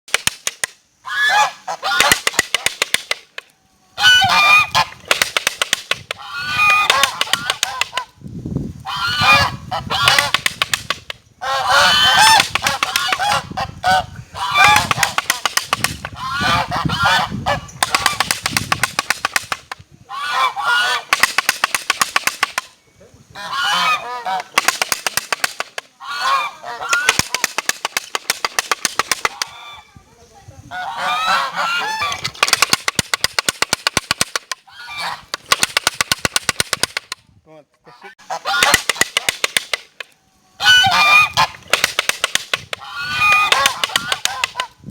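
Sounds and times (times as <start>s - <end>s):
geese honking: 1.0s - 3.2s, 4.0s - 8.2s, 8.8s - 10.6s, 11.4s - 18.4s, 19.2s - 22.6s, 23.2s - 28.3s, 29.0s - 29.9s, 30.7s - 32.8s, 34.4s - 35.5s, 37.8s - 39.5s, 40.5s - 41.9s, 42.8s - 44.9s.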